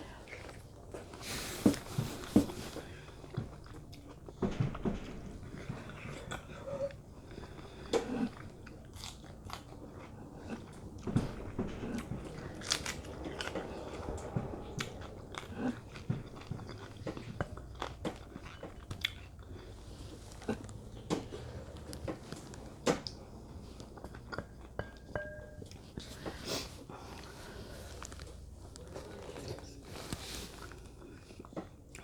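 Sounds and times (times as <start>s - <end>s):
person chewing food: 0.0s - 4.8s, 5.4s - 32.0s.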